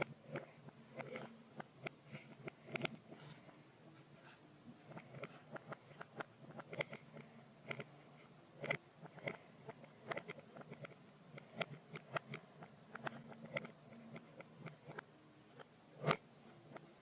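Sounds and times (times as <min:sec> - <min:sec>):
toy pieces clicking and tapping: 0:04.9 - 0:07.9.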